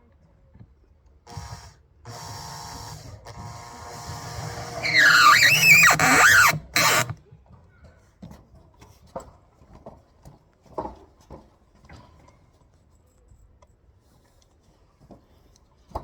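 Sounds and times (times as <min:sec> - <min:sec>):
power tool whining: 0:01.3 - 0:07.2.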